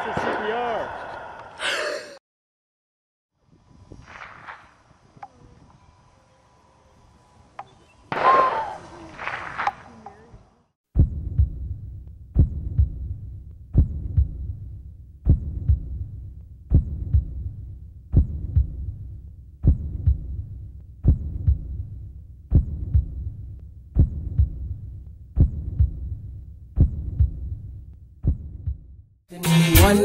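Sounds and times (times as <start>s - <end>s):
heartbeat thumps: 11.0s - 29.0s.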